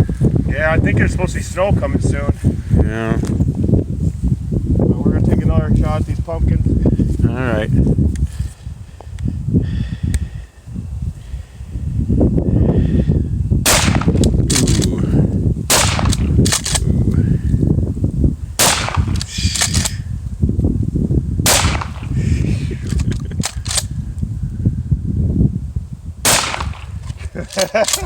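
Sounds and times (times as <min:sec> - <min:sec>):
shotgun shots: 0:13.6 - 0:14.8, 0:15.7 - 0:16.8, 0:18.6 - 0:19.9, 0:21.5 - 0:22.2, 0:26.2 - 0:27.0.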